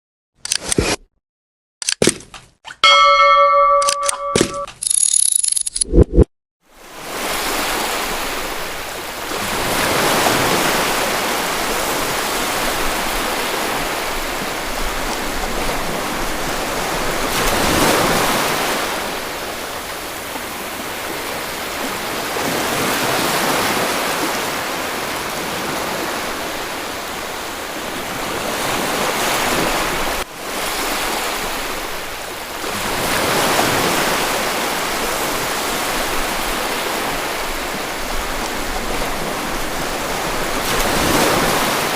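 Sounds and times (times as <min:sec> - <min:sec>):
sea waves washing on shore: 0:06.7 - 0:41.9.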